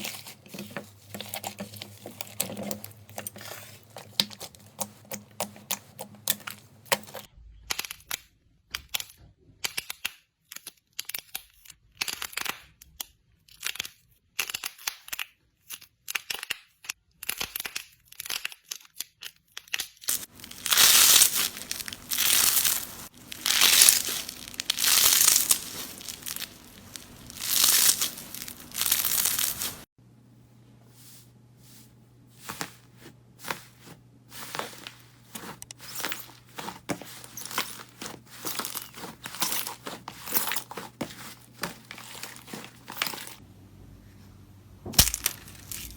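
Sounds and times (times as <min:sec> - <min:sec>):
slime crackling and squelching: 0:00.0 - 0:08.3, 0:20.1 - 0:29.9, 0:44.9 - 0:45.9
low steady hum: 0:20.3 - 0:45.9.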